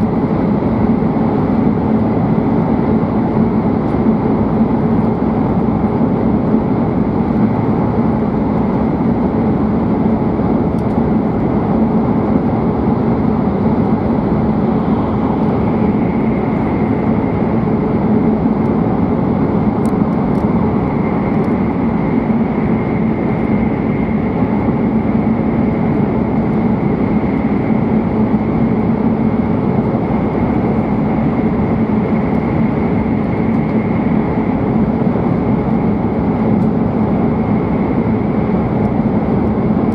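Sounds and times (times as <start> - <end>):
train running rumble: 0.0 - 39.9
faint high whine: 9.2 - 39.9.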